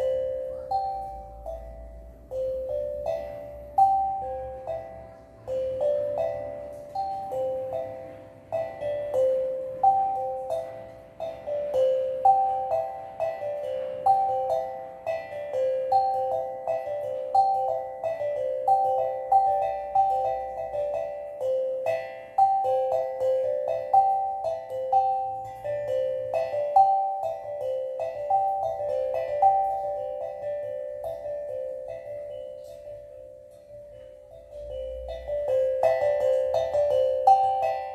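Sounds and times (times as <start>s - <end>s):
steel tongue drum notes: 0.0s - 37.9s.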